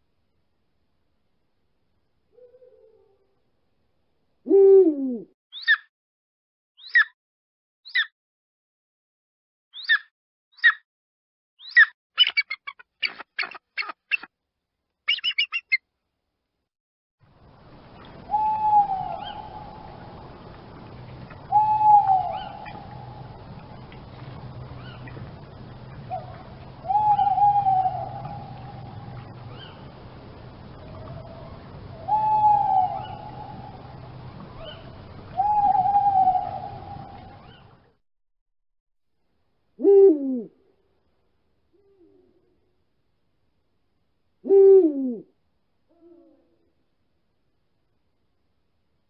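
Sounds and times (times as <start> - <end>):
low steady background hum: 0.0 - 5.3, 17.2 - 38.0, 39.2 - 49.0
low hoot-like call: 4.5 - 5.3, 18.3 - 20.1, 21.5 - 23.4, 26.1 - 29.8, 30.8 - 34.0, 34.6 - 37.6, 39.8 - 40.6, 44.4 - 45.3, 45.9 - 46.7
background hiss: 17.2 - 37.9.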